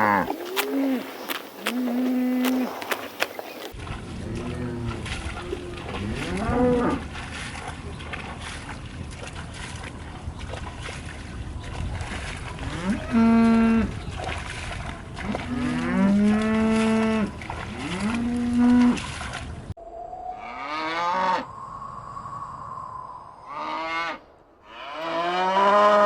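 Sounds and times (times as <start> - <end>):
cows mooing: 0.0 - 1.1, 1.7 - 2.8, 4.0 - 7.1, 12.6 - 14.0, 15.2 - 19.0, 20.4 - 21.5, 23.5 - 26.0.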